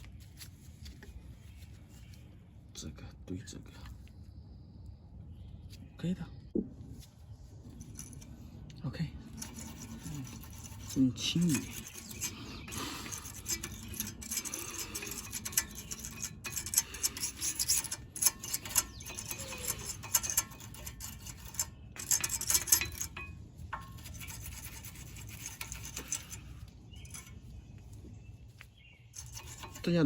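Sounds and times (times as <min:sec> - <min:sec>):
brush scrubbing metal parts: 0:07.7 - 0:30.0.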